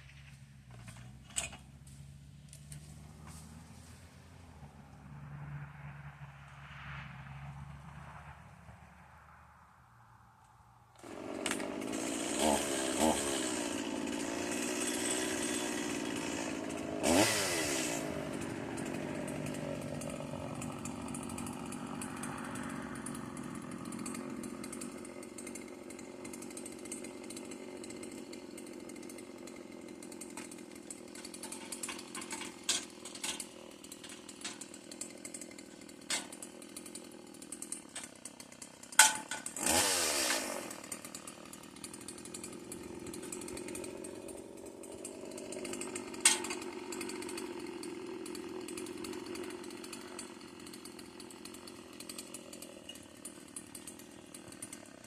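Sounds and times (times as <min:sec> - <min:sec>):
chainsaw engine idling and revving: 0:00.1 - 0:06.3, 0:10.9 - 0:55.0.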